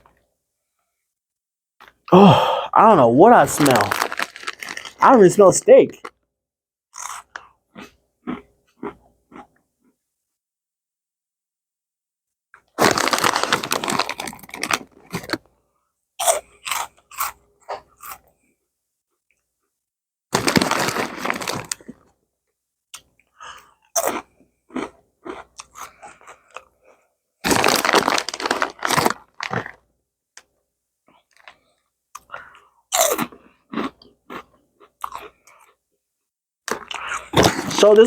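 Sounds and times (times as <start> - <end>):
crunchy snack chewing: 3.4 - 5.2, 12.8 - 15.4, 16.2 - 18.3, 20.3 - 22.1, 23.0 - 26.7, 27.4 - 29.8, 32.2 - 35.8.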